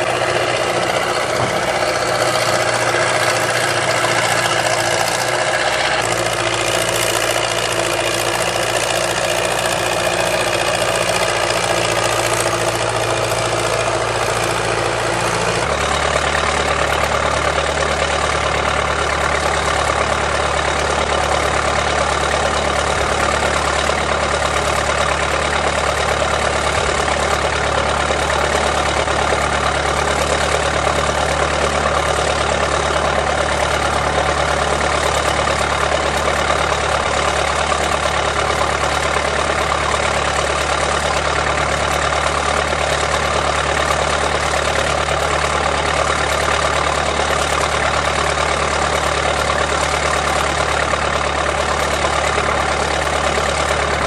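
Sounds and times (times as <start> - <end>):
backhoe engine running: 0.0 - 54.0.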